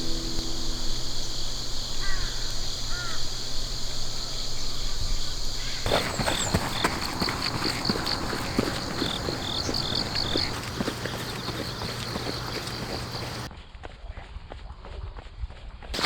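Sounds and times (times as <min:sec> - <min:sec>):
footsteps crunching on leaves: 0:00.0 - 0:13.5
outdoor background noise: 0:00.0 - 0:16.0
crow-like caws: 0:01.9 - 0:03.6, 0:05.6 - 0:13.5.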